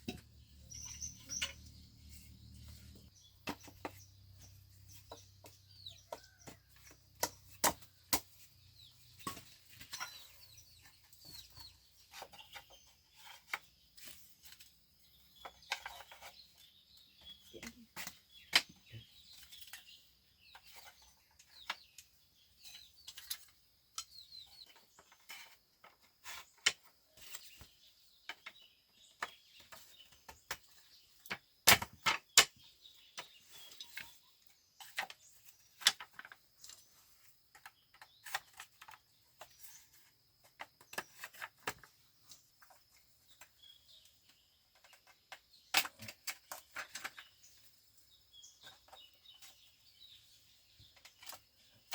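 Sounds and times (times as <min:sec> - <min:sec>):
birds chirping: 0:00.0 - 0:51.9.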